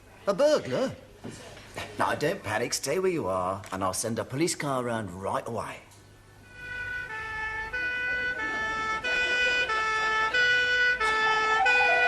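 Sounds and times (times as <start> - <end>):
two-tone police siren: 6.5 - 12.0.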